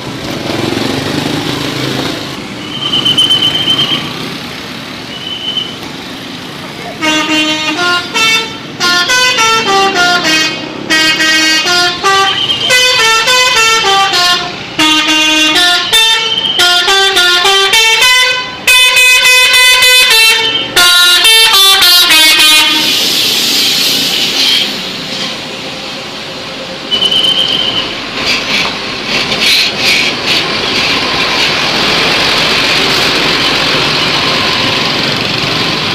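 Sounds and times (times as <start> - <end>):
musical bus air horn: 6.9 - 23.2
rushing noise: 21.7 - 35.9.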